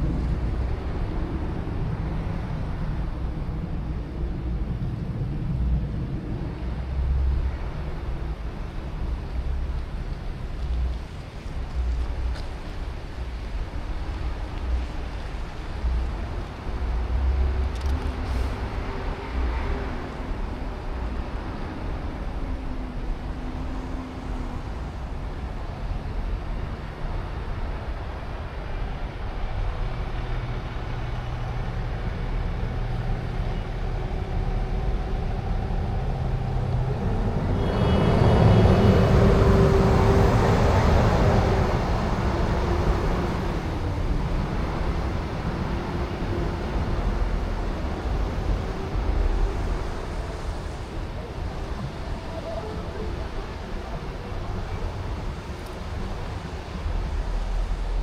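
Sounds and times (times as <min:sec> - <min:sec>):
street traffic rumbling: 0:00.0 - 0:58.0
heavy vehicle passing: 0:28.3 - 0:58.0.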